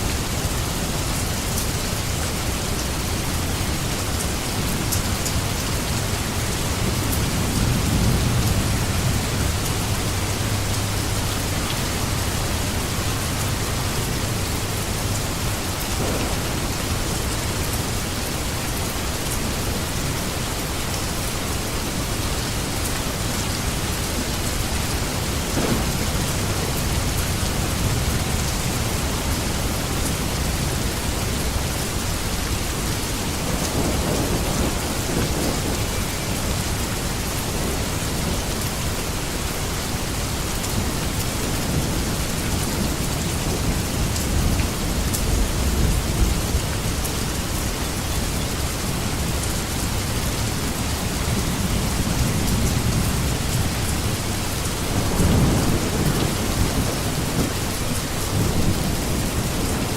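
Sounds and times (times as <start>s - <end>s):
steady rain: 0.0s - 59.9s
distant thunder rumbling: 6.6s - 18.9s, 24.0s - 31.0s, 33.0s - 38.4s, 51.3s - 59.9s.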